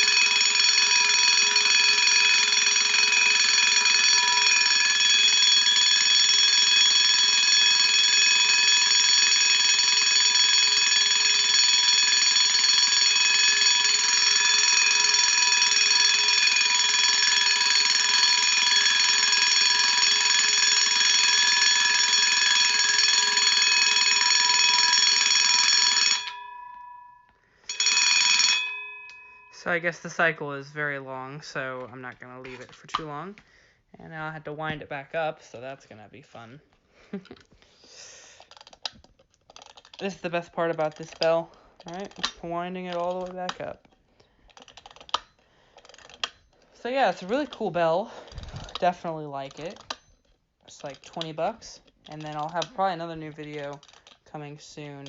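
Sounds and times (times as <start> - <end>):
heat detector bell ringing: 0.0 - 29.6.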